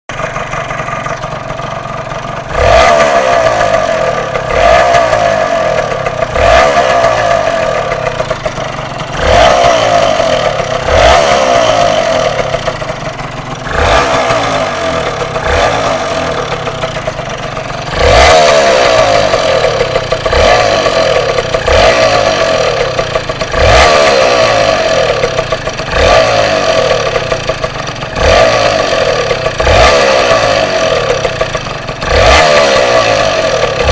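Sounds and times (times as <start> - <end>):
two-stroke motorcycle engine revving: 0.1 - 33.9.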